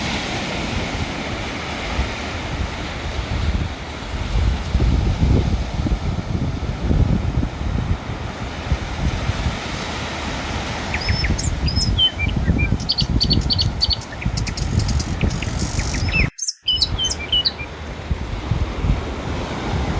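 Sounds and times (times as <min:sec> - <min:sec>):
ocean surf washing: 0:00.0 - 0:19.9
small birds chirping: 0:10.9 - 0:17.8.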